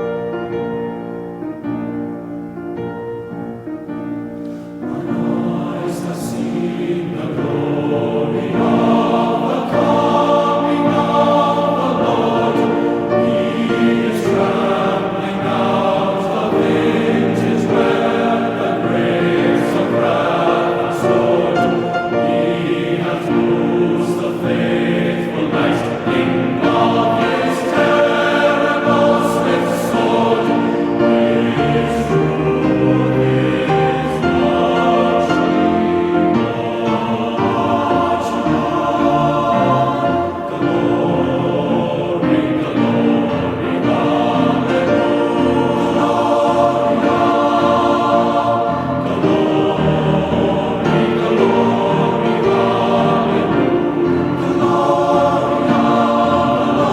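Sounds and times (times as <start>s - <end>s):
choir singing sustained chords: 0.0s - 56.9s
instrumental accompaniment: 0.0s - 56.9s.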